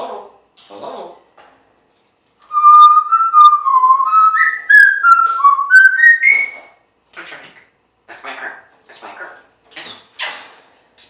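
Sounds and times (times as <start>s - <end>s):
parrot whistling: 2.5s - 6.8s.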